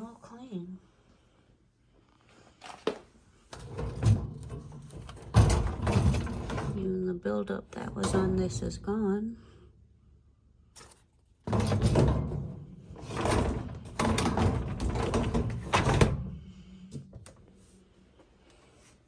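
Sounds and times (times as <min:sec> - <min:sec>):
dishwasher rack rattling: 0:03.6 - 0:06.9, 0:11.5 - 0:16.3.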